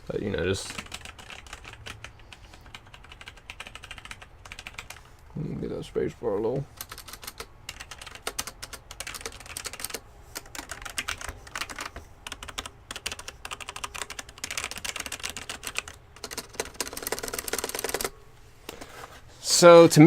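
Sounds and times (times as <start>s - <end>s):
mechanical keyboard typing: 0.7s - 5.1s, 6.8s - 18.1s.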